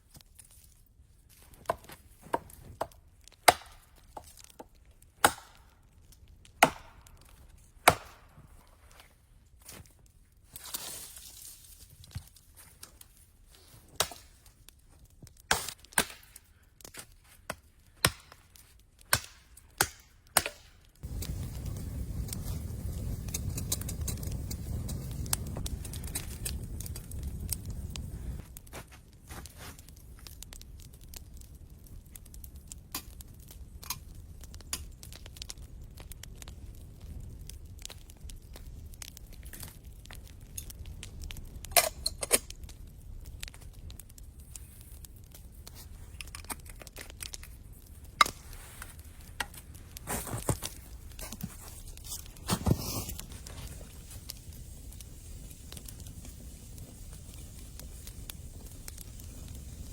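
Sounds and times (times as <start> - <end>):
small crackles: 0.0 - 59.9
axe chopping wood: 1.7 - 4.3, 5.2 - 5.6, 6.6 - 7.0, 7.8 - 8.2, 15.5 - 16.2, 17.5 - 18.4, 19.1 - 20.7.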